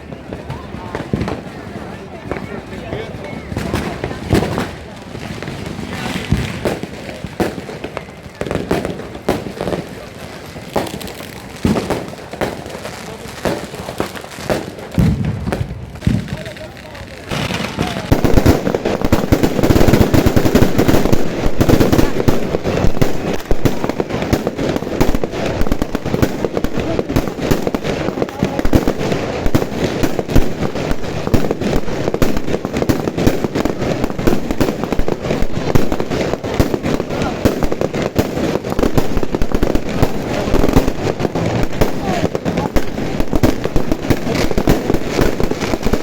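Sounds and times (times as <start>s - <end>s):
fireworks bangs and crackling: 0.0s - 46.0s.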